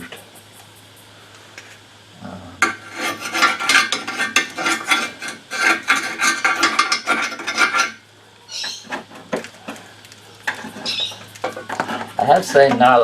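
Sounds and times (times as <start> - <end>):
scraping granules from spring seat: 8.6 - 13.0.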